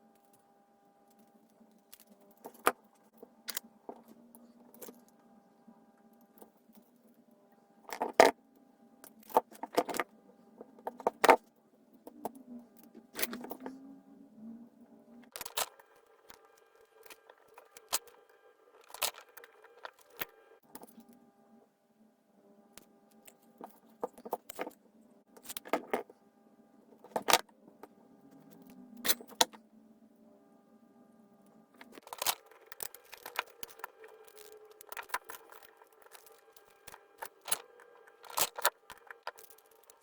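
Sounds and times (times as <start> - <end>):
faint steady hum: 0.0 - 40.0
small tools clicking and clinking: 15.3 - 18.2, 18.8 - 21.1, 31.8 - 40.0.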